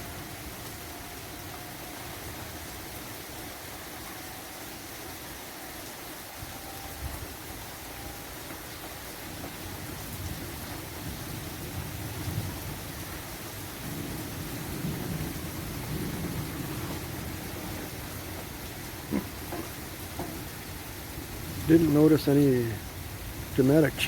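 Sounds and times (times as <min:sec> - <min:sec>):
steady rain: 0:00.0 - 0:24.0
rolling thunder: 0:09.2 - 0:23.6.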